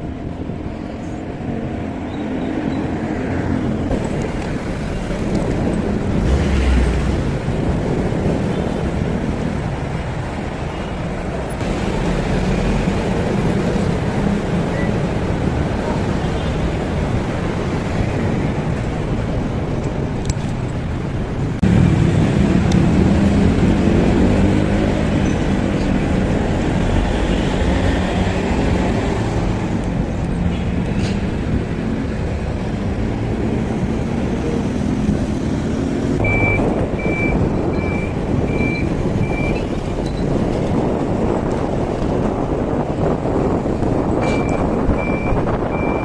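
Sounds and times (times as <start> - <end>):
road traffic: 0.0 - 46.0
wind rumble: 0.0 - 46.0
short high beeps: 36.2 - 39.6.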